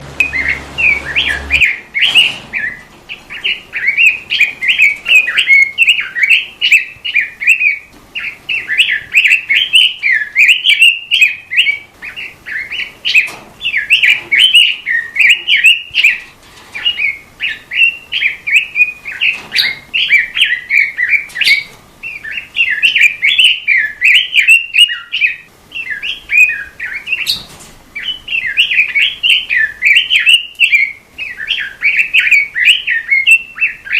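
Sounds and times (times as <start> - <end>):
songbird chirps and warbles: 0.0 - 33.9.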